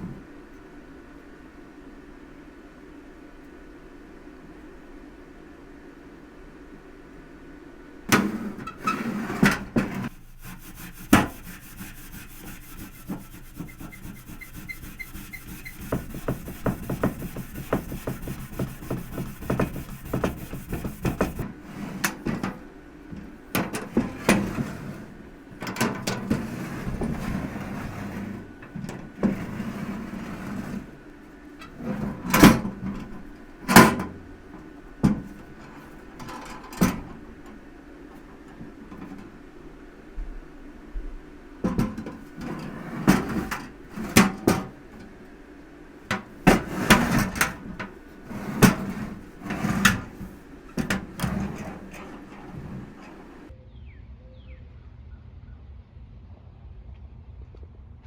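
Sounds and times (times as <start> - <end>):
hands scraping metal toolbox: 8.1 - 39.4, 41.6 - 45.3, 46.1 - 53.5
sharp knocks on metal: 12.5 - 21.4.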